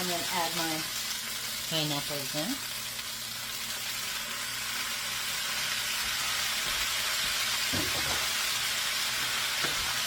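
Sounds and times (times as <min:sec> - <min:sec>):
food sizzling in frying pan: 0:00.0 - 0:10.0.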